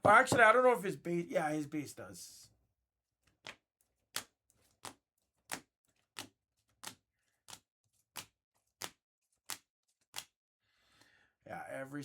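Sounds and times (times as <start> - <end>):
trading cards snapping: 8.2 - 10.3.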